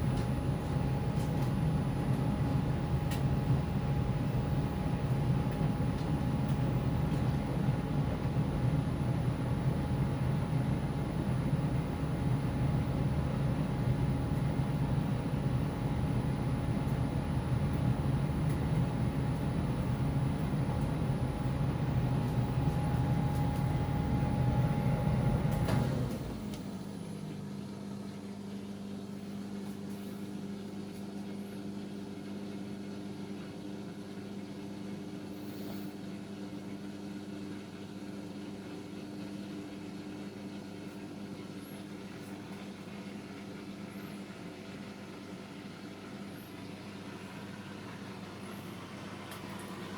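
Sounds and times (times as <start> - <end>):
tumble dryer running: 14.6 - 27.0, 47.1 - 49.9.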